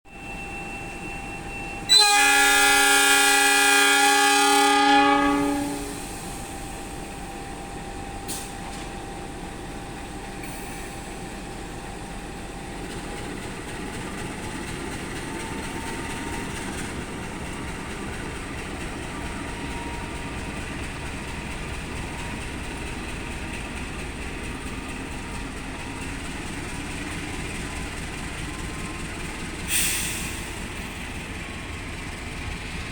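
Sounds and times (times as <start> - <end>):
train running noise: 0.1 - 32.9
locomotive horn chord blast: 1.8 - 6.2.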